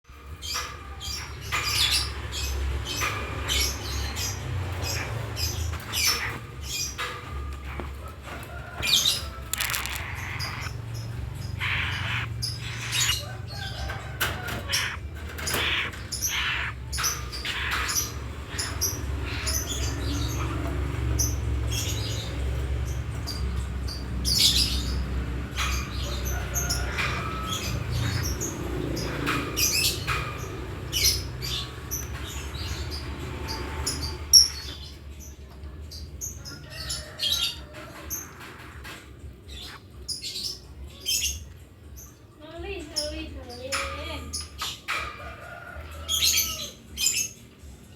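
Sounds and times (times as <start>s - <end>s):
bird clicks and chirps: 9.2s - 10.8s.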